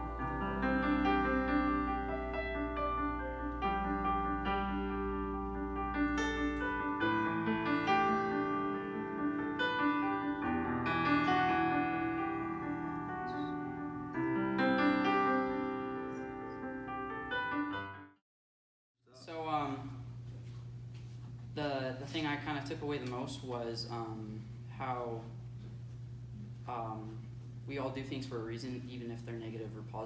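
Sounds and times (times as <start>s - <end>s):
piano chords: 0.0s - 18.2s.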